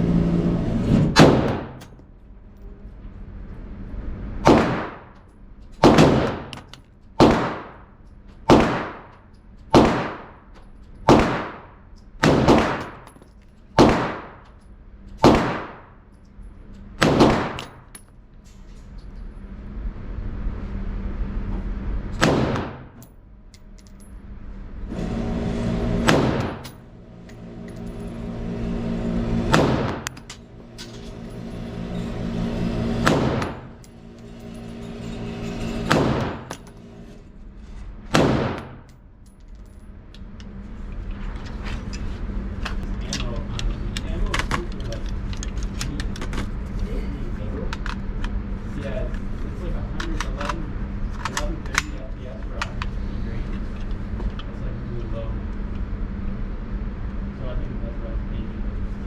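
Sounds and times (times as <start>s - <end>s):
steady low hum: 0.0s - 59.0s
rifle shots ringing: 5.8s - 6.5s, 8.5s - 9.1s, 11.1s - 11.6s, 12.2s - 13.0s, 13.8s - 14.4s, 15.2s - 15.9s, 17.0s - 17.8s.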